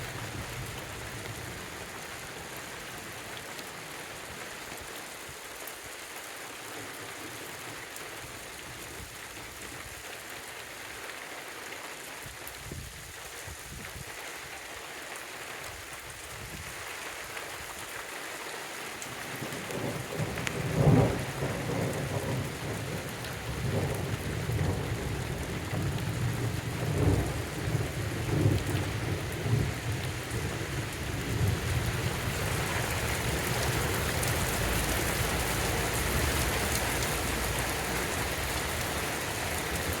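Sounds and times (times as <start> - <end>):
heavy rain falling: 0.0 - 40.0
thunder clap and rumbles: 19.7 - 40.0.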